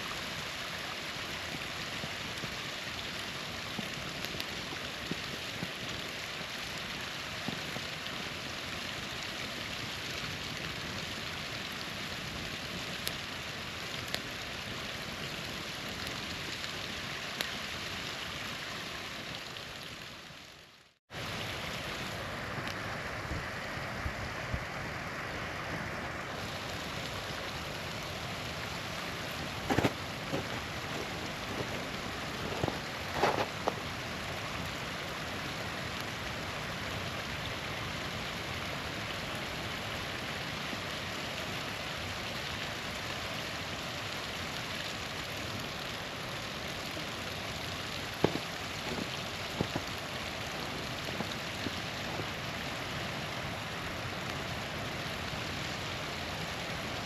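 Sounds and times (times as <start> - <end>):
campfire crackling: 0.0 - 57.0
small waterfall rushing: 0.0 - 57.0
fire popping: 0.1 - 20.4, 21.2 - 23.4, 26.3 - 54.6.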